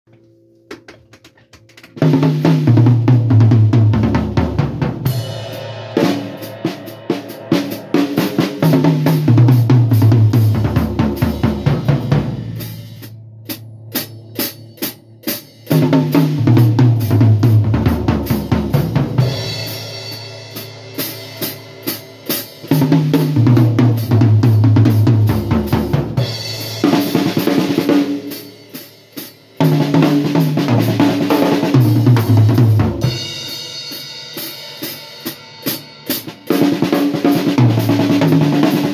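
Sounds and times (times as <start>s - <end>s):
snare drum: 0.7s - 14.5s, 29.6s - 33.2s, 34.5s - 38.9s
tom-tom drum strokes: 1.9s - 21.8s
bass drum: 2.0s - 15.0s, 15.7s - 19.8s, 22.8s - 27.3s, 29.8s - 33.4s
cymbal: 4.9s - 23.4s, 24.0s - 38.9s.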